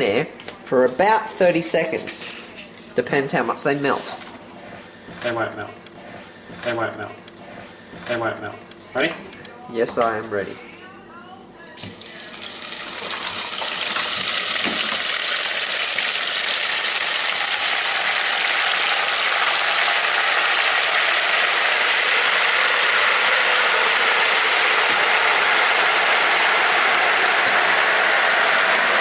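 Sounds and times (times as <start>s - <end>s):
hot oil sizzling: 11.8s - 29.0s.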